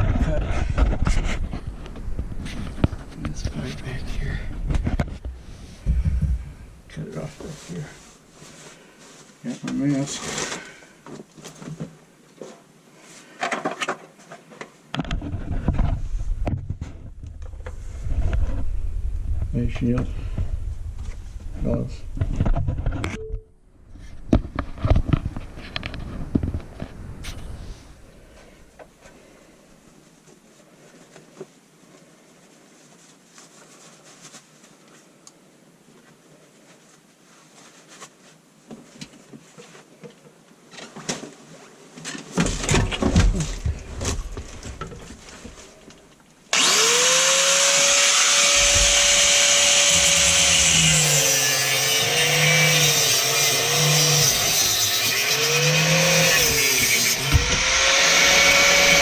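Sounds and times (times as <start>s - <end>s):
handling knocks and rattles: 38.7s - 46.2s
power cutter grinding through pipe: 46.5s - 59.0s.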